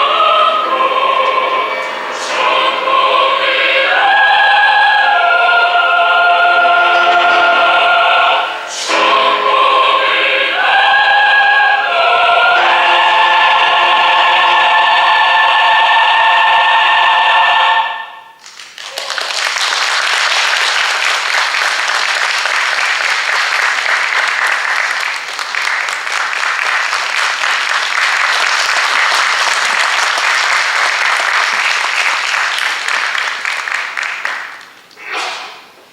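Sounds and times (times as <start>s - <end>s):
choir singing held chord: 0.0s - 18.4s
audience applause: 18.4s - 34.9s.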